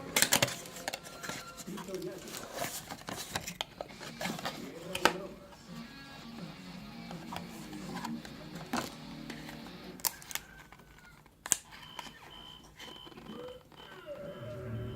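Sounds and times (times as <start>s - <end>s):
faint high beep: 11.8s - 14.9s.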